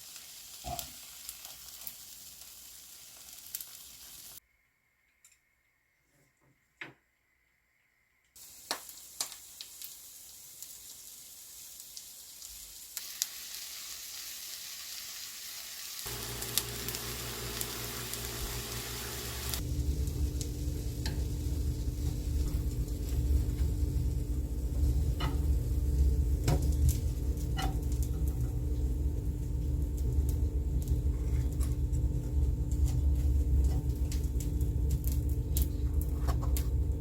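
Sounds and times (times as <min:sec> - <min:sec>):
food sizzling in oil: 0:00.0 - 0:04.4, 0:08.4 - 0:35.5
steady low hum: 0:16.1 - 0:37.0.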